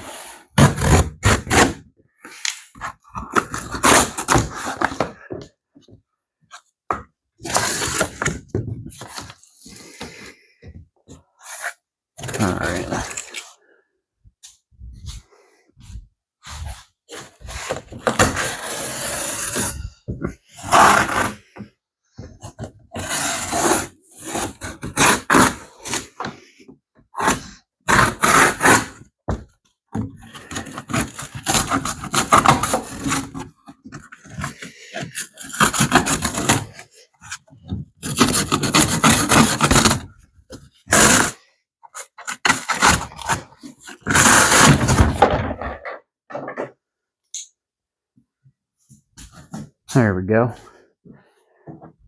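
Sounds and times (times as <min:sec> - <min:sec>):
cardboard scraping and rubbing: 0:00.0 - 0:01.8, 0:02.6 - 0:05.2, 0:07.4 - 0:10.2, 0:16.4 - 0:21.6, 0:22.4 - 0:26.4, 0:27.2 - 0:29.0, 0:30.2 - 0:45.8.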